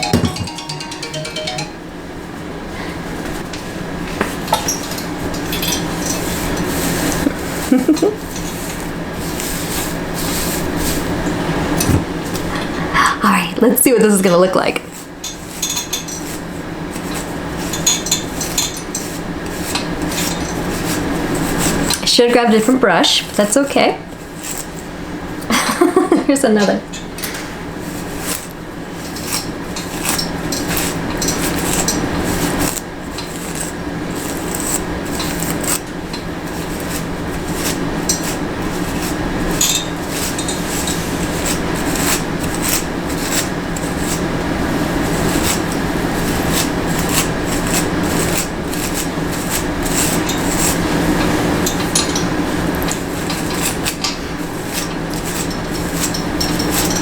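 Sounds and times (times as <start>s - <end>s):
hairbrush rasping through hair: 6.1s - 11.2s, 18.9s - 24.9s, 27.8s - 57.0s.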